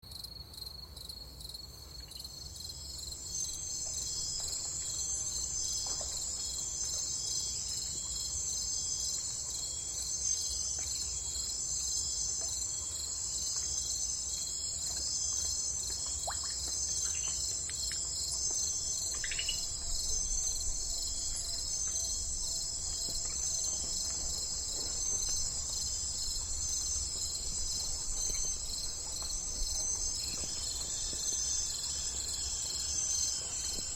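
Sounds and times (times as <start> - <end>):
crickets chirping: 0.1 - 33.9
bird chirps: 19.0 - 22.2.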